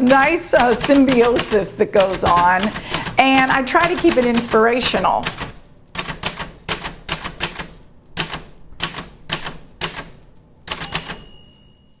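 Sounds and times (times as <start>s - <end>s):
typewriter keys clacking: 0.0s - 11.7s
typewriter bell ringing: 10.7s - 12.0s.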